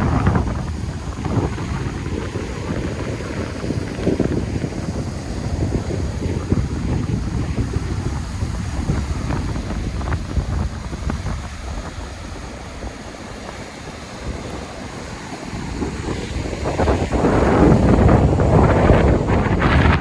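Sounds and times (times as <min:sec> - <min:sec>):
sea surf washing on shore: 0:00.0 - 0:20.0
wind buffeting microphone: 0:00.0 - 0:20.0.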